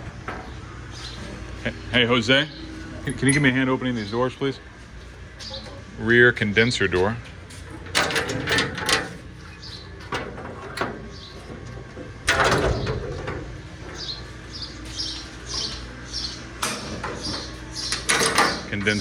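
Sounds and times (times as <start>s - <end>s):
metal door clanking: 3.0s - 3.6s, 7.7s - 14.3s, 15.5s - 19.0s
metal latch clicks: 7.8s - 9.3s, 10.0s - 14.0s, 16.6s - 19.0s.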